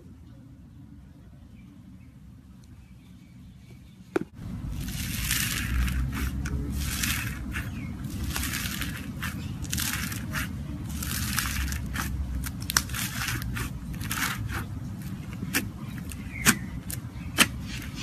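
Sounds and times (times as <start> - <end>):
slime squishing and crackling: 4.5 - 18.0.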